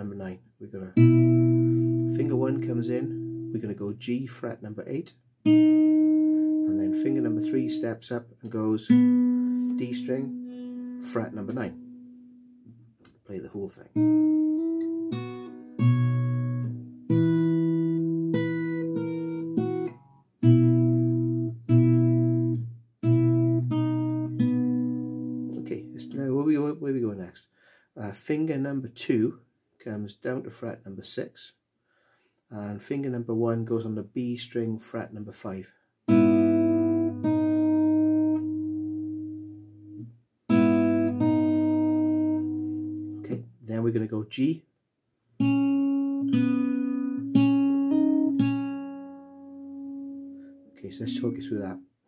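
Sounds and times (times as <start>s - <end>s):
fingerstyle acoustic guitar: 1.0s - 3.6s, 5.4s - 12.8s, 14.0s - 26.1s, 36.1s - 43.4s, 45.4s - 51.8s.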